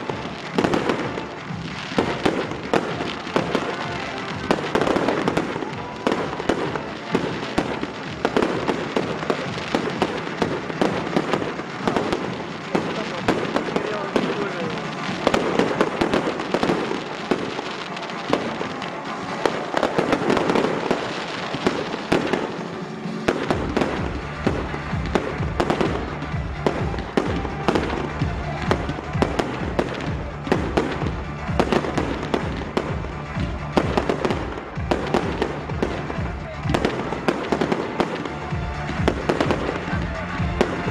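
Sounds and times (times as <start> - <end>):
fireworks bangs and crackle: 0.0 - 40.9
music with bass beat: 21.6 - 40.9.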